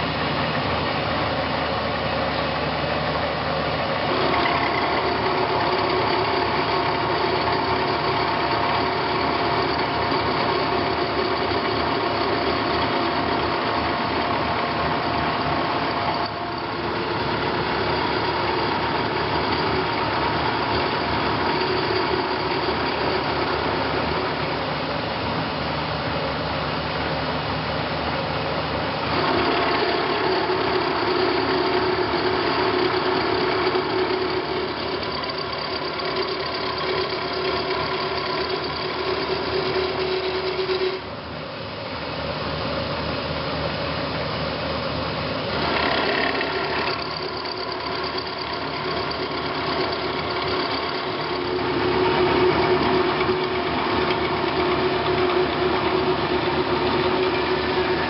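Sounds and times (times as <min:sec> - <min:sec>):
steady hum: 0:00.0 - 0:27.1
milling machine whirring: 0:03.5 - 0:24.8, 0:29.0 - 0:41.2, 0:45.4 - 0:58.0.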